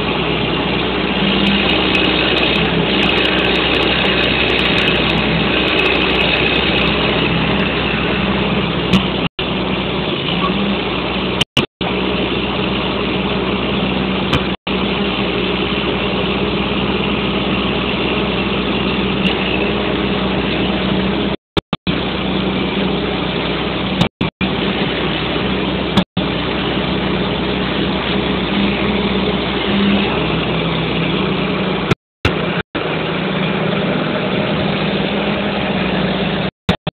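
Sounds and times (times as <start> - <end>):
diesel engine running: 0.0 - 36.8.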